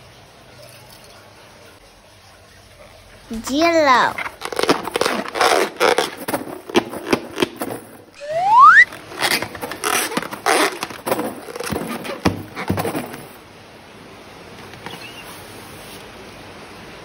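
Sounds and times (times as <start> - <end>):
slime squelching and crackling: 4.0 - 7.4
short rising squeak: 8.2 - 9.3.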